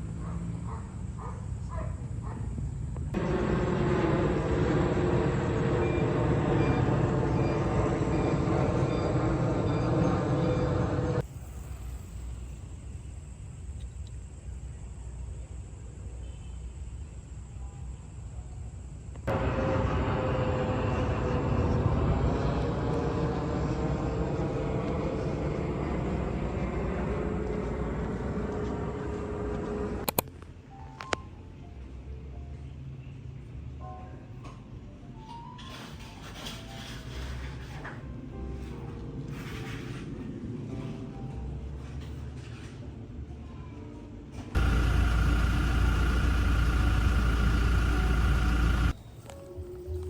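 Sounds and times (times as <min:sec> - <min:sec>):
vehicle rumble with hum: 0:00.0 - 0:12.6, 0:18.8 - 0:30.6, 0:44.5 - 0:50.0.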